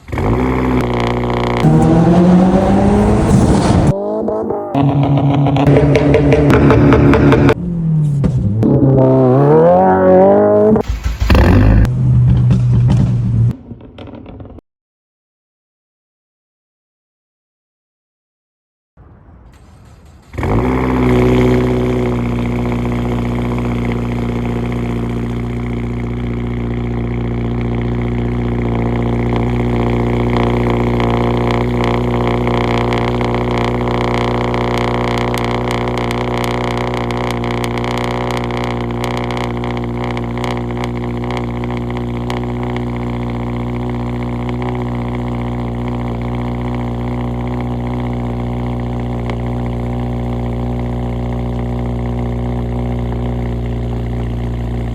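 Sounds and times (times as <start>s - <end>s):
car engine idling: 19.5s - 54.9s.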